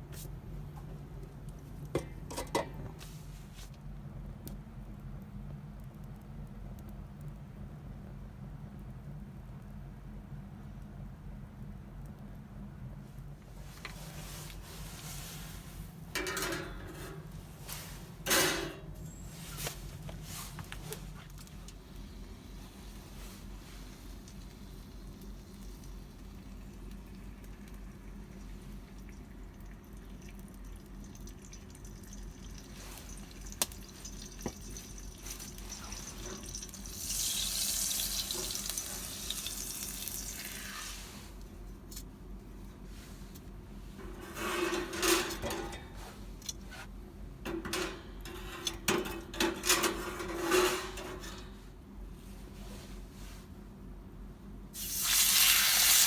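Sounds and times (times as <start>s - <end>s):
cookware clattering and scraping: 2.0s - 2.9s, 16.2s - 19.0s, 44.0s - 46.0s, 47.5s - 51.6s
chicken sizzling over campfire: 21.8s - 29.5s, 30.5s - 41.0s, 54.8s - 56.0s.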